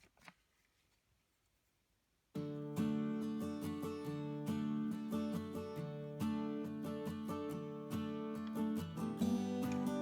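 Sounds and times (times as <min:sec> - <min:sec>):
acoustic guitar picking: 0:02.4 - 0:10.0.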